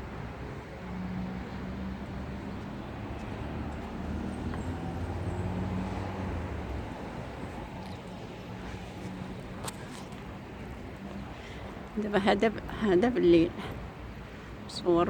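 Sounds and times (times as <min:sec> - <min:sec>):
low vehicle rumble: 0:00.0 - 0:12.0.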